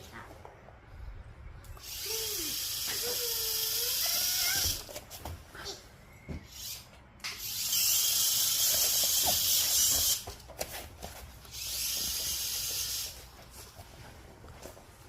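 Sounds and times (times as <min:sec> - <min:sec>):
small robot motors whirring: 0:01.8 - 0:04.9, 0:06.4 - 0:10.2, 0:11.5 - 0:13.2.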